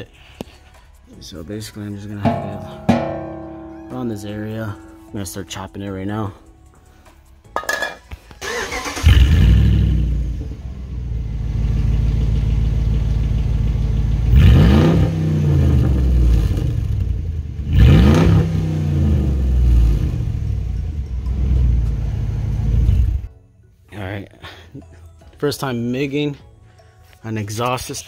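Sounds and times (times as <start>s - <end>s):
car engine idling and revving: 8.4s - 23.3s.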